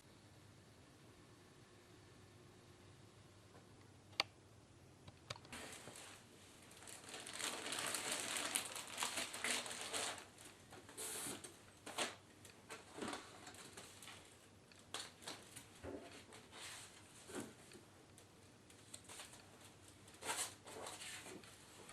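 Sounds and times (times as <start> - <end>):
plastic packaging crinkling: 5.5 - 10.6.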